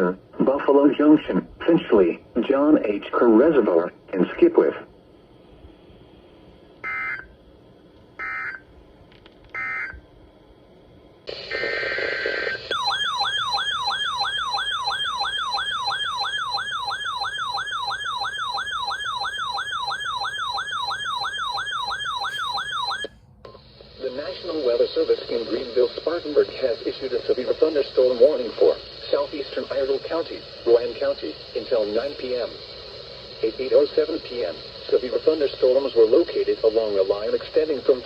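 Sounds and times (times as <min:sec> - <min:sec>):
warbling siren-like attention tone: 0:12.7 - 0:23.1.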